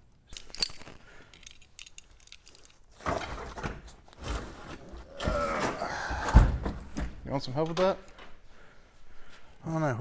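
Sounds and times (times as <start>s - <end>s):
keys jangling: 0.3s - 2.9s
clattering handling noise: 0.3s - 5.0s.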